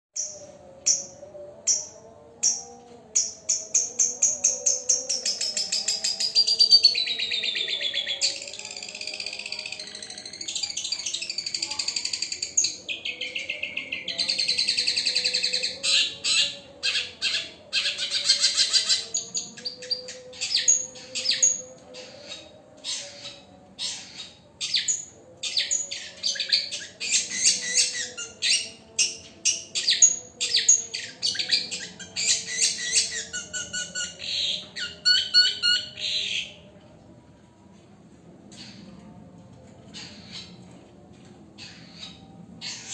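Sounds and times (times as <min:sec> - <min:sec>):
bird singing rapid chirps and trills: 0:00.2 - 0:36.6.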